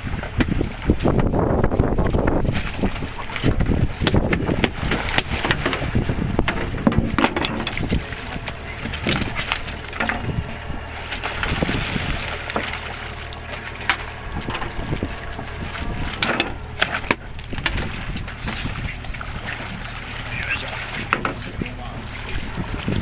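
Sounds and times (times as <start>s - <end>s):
wind noise: 0.0s - 20.1s, 20.9s - 23.0s
knocks and clatter on wooden boat: 0.0s - 23.0s
low drone: 4.7s - 23.0s.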